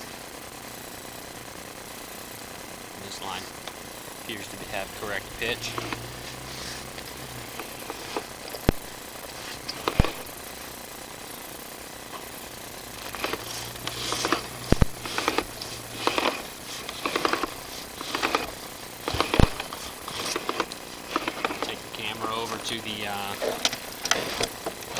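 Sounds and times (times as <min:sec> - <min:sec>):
faint low hum: 0:00.0 - 0:24.9
cable rattling in pipe: 0:13.0 - 0:22.6, 0:23.3 - 0:24.9.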